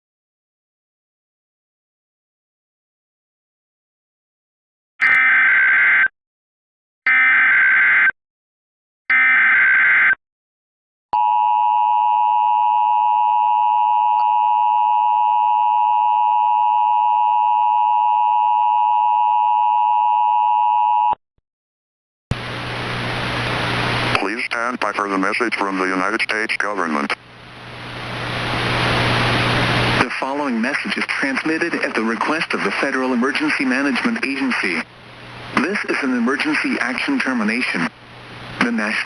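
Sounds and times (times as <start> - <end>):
static hiss: 22.3 - 39.0.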